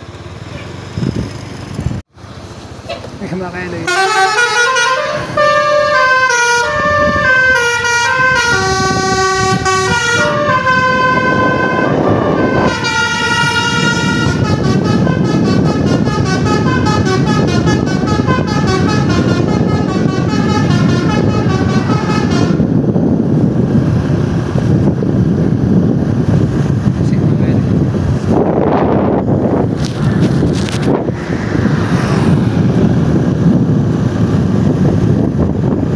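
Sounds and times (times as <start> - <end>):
musical air horn playing a tune: 3.9 - 22.7
steady rumble: 8.5 - 35.9.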